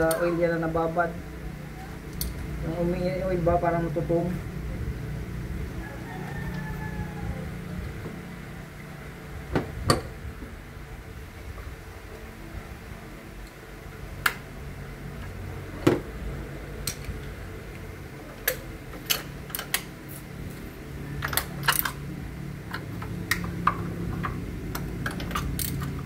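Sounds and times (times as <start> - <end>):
low steady hum: 0.0 - 26.0
metallic clicks of hand tools: 22.7 - 26.0.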